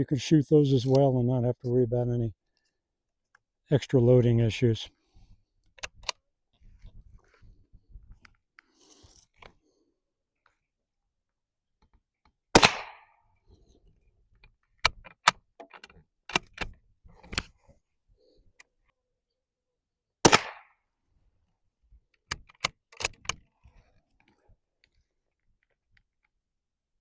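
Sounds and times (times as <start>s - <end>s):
rifle bolt metallic clicks: 5.8s - 6.2s, 22.2s - 23.4s
rifle shot: 12.5s - 13.2s, 20.2s - 20.8s.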